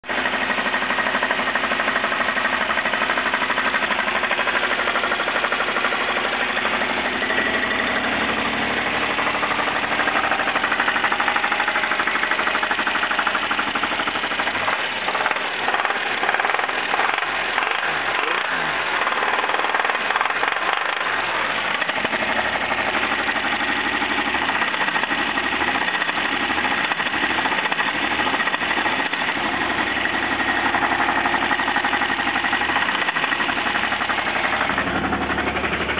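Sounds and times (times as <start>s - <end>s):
engine running with hammering knock: 0.1s - 35.9s.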